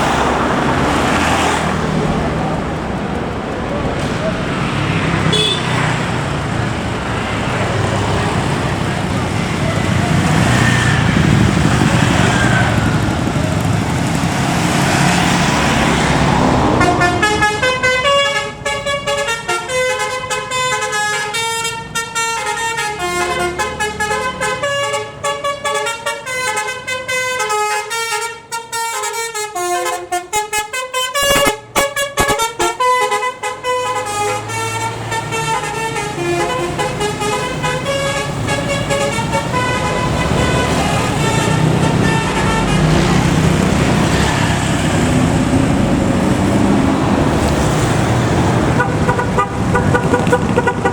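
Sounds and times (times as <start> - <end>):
road and engine noise: 0.0 - 50.9
bus musical horn melody: 5.2 - 6.4, 16.6 - 45.0, 48.7 - 50.9.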